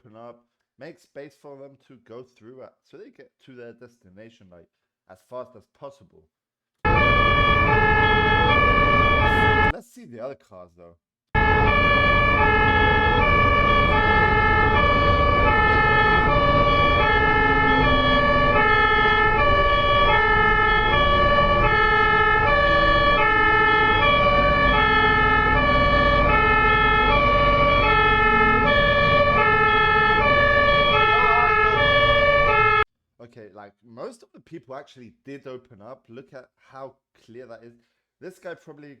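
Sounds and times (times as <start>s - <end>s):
ambulance two-tone siren: 6.8s - 9.7s, 11.4s - 32.9s
road noise rumble: 11.4s - 32.6s.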